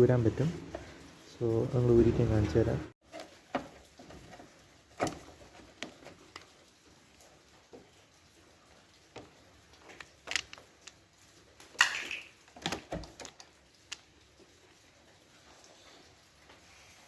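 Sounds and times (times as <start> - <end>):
light clicks and knocks: 3.1 - 14.8.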